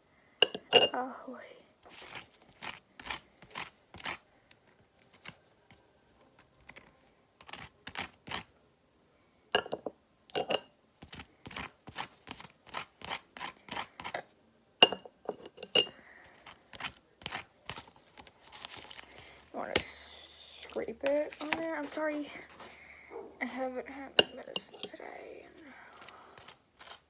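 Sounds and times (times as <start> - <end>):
butter knife scraping a plate: 1.9 - 4.2, 10.4 - 14.2, 15.4 - 19.2, 26.0 - 27.0.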